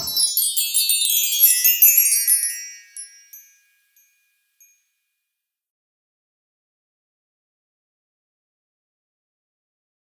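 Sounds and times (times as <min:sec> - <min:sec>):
high bell-like chimes: 0:00.0 - 0:04.9.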